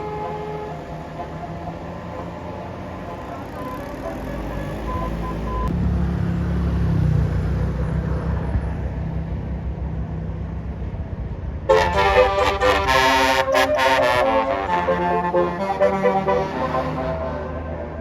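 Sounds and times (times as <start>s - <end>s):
multi-note bus horn: 0.0s - 5.7s, 11.7s - 18.0s
bus engine rumble: 0.0s - 18.0s.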